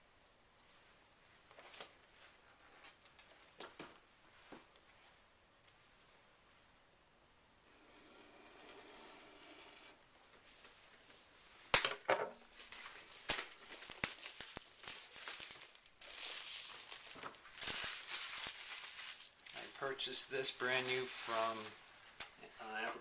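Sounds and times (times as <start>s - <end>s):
packaging crinkling and tearing: 12.6s - 22.3s.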